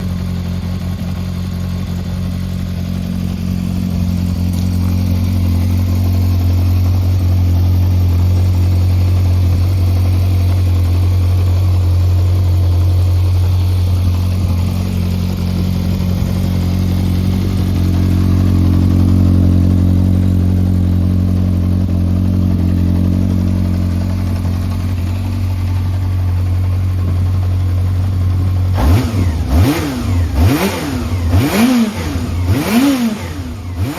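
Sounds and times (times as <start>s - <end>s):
motorcycle engine idling and revving: 0.0s - 33.9s.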